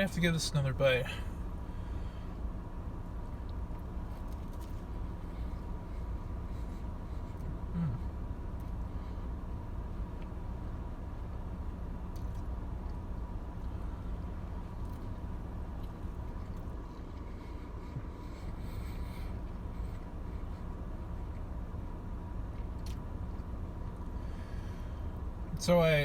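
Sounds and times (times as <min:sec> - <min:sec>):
faint steady hum: 0:00.0 - 0:26.0
steady low rumble: 0:00.0 - 0:26.0
person chewing: 0:12.1 - 0:13.9, 0:14.7 - 0:21.5.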